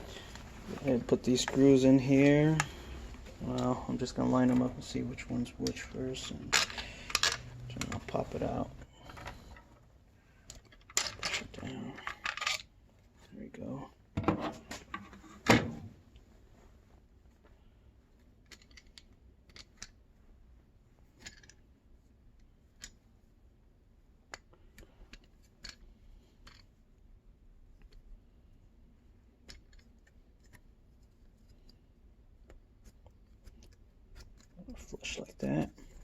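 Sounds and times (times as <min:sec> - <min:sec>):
low background hum: 0:00.0 - 0:36.0
small parts clicking and tapping: 0:05.6 - 0:09.7, 0:10.4 - 0:12.7, 0:18.3 - 0:20.0, 0:21.1 - 0:21.7, 0:22.4 - 0:23.0, 0:24.3 - 0:26.8, 0:29.4 - 0:36.0.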